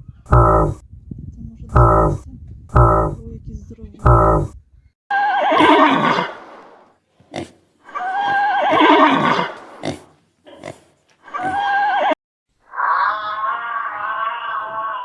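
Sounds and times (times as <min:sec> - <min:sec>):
horse snorting: 0:00.0 - 0:00.8, 0:01.7 - 0:03.3, 0:04.0 - 0:04.6
steady animal call: 0:00.0 - 0:00.8, 0:01.6 - 0:03.4, 0:04.0 - 0:06.3
horse neighing: 0:00.3 - 0:00.8, 0:01.8 - 0:02.2, 0:02.8 - 0:03.2, 0:04.1 - 0:04.6, 0:05.2 - 0:06.4.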